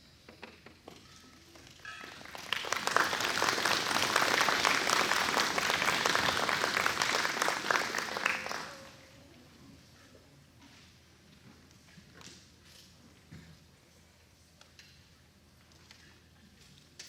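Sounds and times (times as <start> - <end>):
audience applauding: 2.1 - 9.0.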